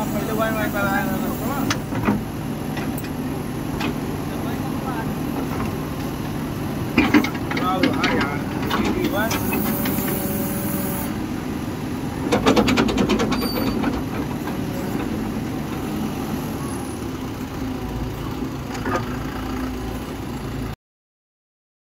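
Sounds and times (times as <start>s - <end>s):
diesel engine running: 0.0s - 20.8s
clattering knocks: 12.3s - 15.1s.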